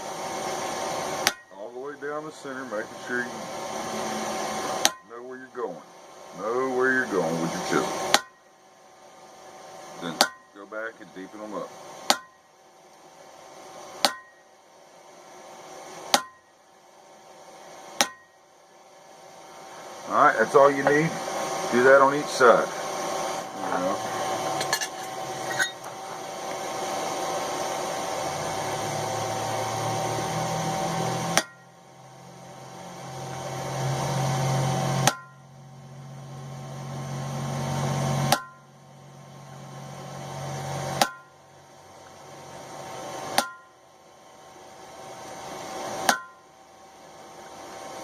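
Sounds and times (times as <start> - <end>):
steady hiss: 0.0 - 48.0
hammer striking chisel: 12.1 - 12.3, 14.0 - 14.3, 16.1 - 16.4, 35.0 - 35.4, 41.0 - 41.3, 43.4 - 43.7, 46.1 - 46.4.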